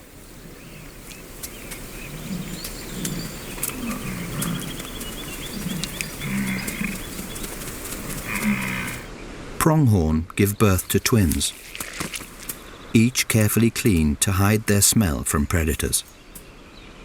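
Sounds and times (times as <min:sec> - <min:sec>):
bison calling: 0:00.0 - 0:09.1, 0:10.4 - 0:16.0.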